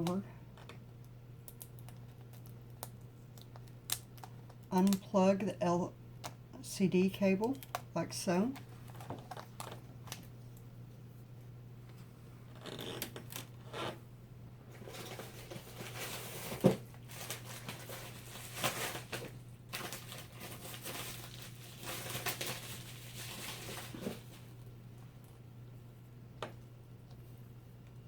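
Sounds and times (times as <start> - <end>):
plastic crinkling and rustling: 8.6 - 10.6, 14.7 - 24.7.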